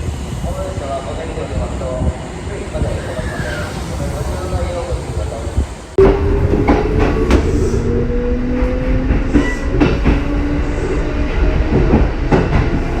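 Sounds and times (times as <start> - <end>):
train wheels clacking: 6.0 - 13.0.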